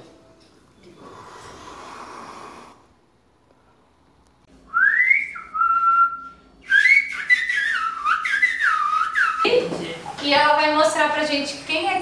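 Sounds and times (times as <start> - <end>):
man whistling bird imitation: 4.7 - 9.5.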